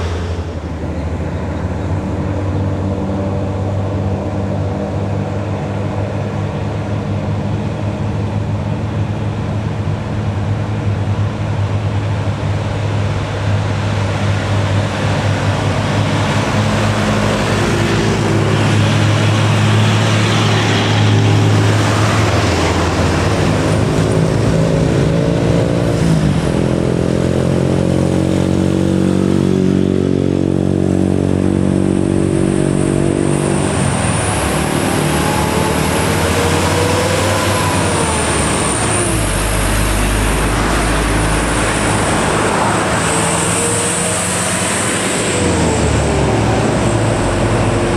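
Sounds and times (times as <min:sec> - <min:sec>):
heavy truck diesel engines labouring: 0:00.0 - 0:47.9.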